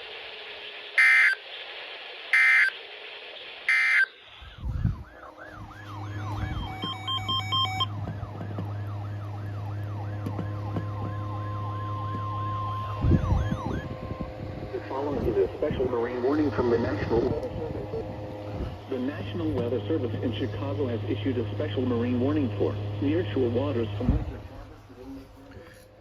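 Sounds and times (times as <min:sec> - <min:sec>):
low hum: 0:00.0 - 0:26.0
warbling digital data tones: 0:00.8 - 0:01.6, 0:02.3 - 0:07.9, 0:09.2 - 0:19.2
rising and falling siren tone: 0:01.0 - 0:01.4, 0:02.4 - 0:02.7, 0:03.7 - 0:19.0
steady tone: 0:03.7 - 0:26.0.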